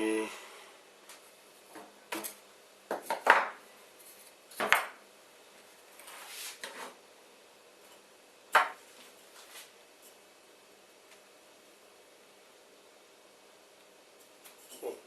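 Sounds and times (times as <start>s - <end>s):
short scrape: 6.1s - 7.0s.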